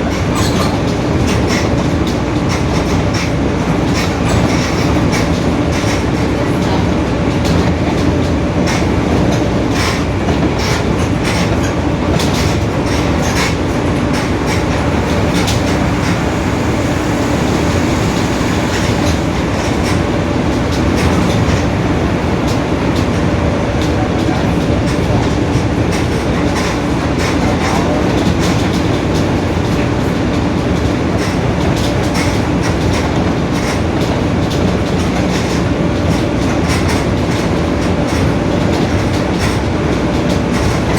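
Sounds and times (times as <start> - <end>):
rattling clicks from bus body: 0.0 - 40.9
bus differential droning: 0.1 - 29.7
road noise: 0.9 - 27.0.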